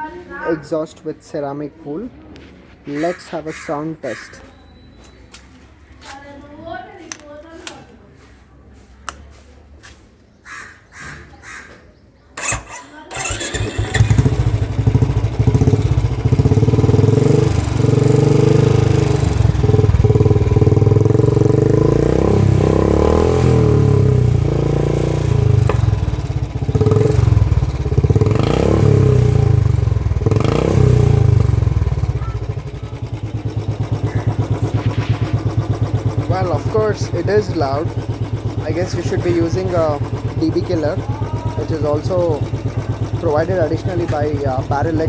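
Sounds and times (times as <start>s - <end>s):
motorcycle engine revving: 12.4s - 45.0s.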